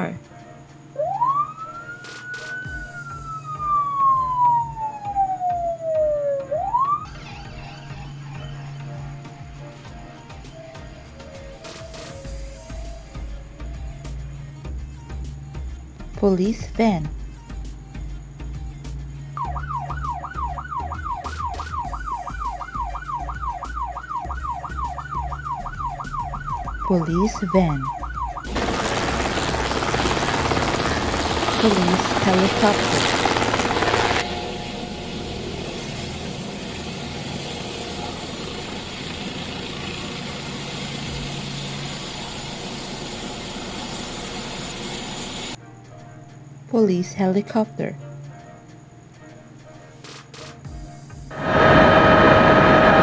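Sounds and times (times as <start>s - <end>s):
police siren wailing: 1.0s - 14.3s, 19.4s - 44.2s, 51.3s - 53.0s
low steady hum: 25.4s - 45.6s.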